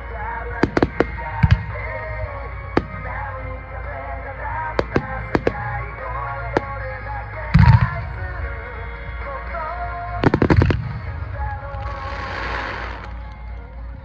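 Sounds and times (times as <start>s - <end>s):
music: 0.0s - 14.0s
fireworks bursting: 0.1s - 13.4s
fireworks crackling hiss: 10.3s - 13.3s.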